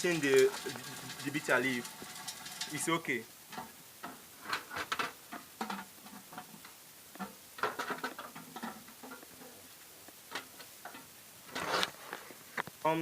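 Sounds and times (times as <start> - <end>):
washing machine ticking and pattering: 0.0 - 3.0
running water: 0.0 - 3.6.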